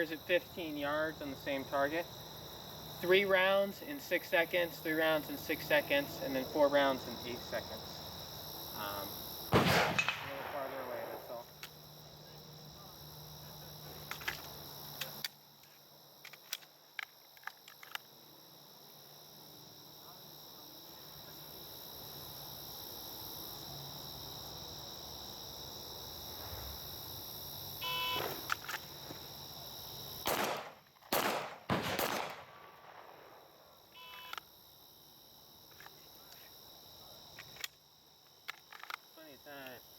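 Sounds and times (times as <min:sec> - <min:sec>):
insect chirring: 0:00.0 - 0:39.9
handgun shots: 0:09.5 - 0:11.2, 0:30.2 - 0:32.5.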